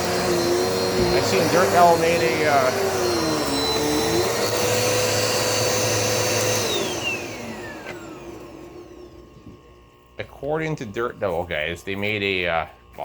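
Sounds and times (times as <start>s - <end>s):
vacuum cleaner motor spinning down: 0.0s - 9.9s.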